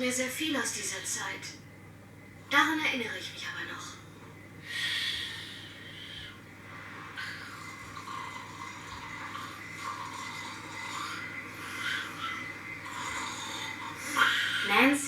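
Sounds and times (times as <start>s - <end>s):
girl snoring: 7.2s - 15.0s.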